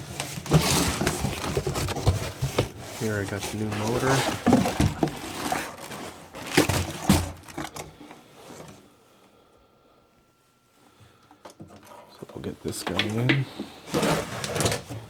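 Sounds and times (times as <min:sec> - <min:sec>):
rustling: 0:00.0 - 0:07.6.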